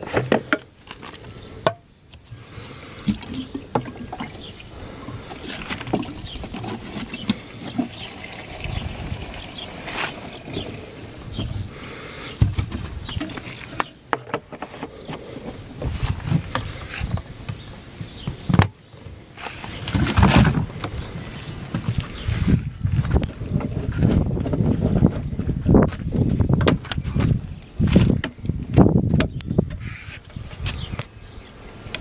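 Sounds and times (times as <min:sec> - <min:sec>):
faint liquid sounds: 0:02.9 - 0:11.4.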